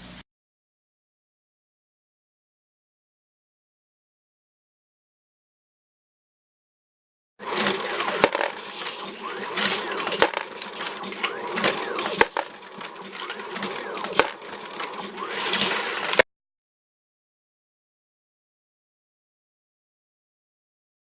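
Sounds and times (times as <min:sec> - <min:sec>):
motor whirring: 0:07.4 - 0:16.2
parts and cases rattling: 0:07.4 - 0:16.2
reloading press clacking: 0:07.4 - 0:16.2.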